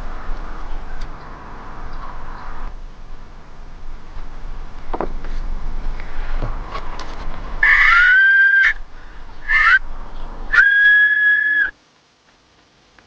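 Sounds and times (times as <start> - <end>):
clay whistle notes: 7.6 - 8.8, 9.4 - 9.8, 10.5 - 11.8.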